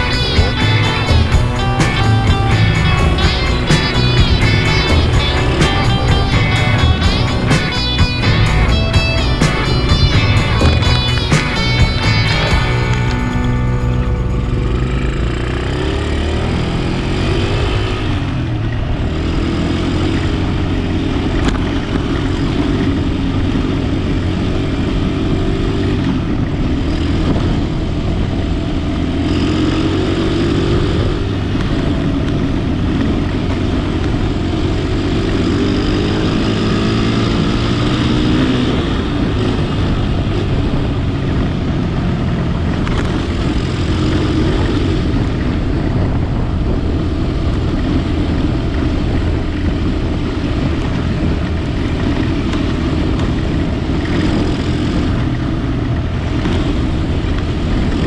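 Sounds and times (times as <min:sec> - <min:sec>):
car engine while driving: 0:00.0 - 0:58.0
road noise: 0:00.0 - 0:58.0.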